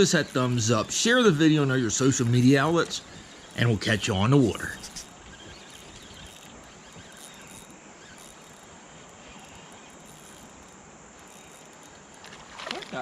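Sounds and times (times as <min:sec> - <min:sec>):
faint pulsing insect chirring: 0:00.0 - 0:13.0
steady hiss: 0:00.0 - 0:13.0.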